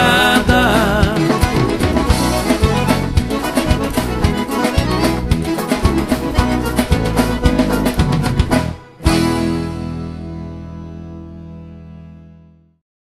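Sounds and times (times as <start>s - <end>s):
bass and drum beat: 0.0s - 9.8s
accordion melody: 0.0s - 12.8s.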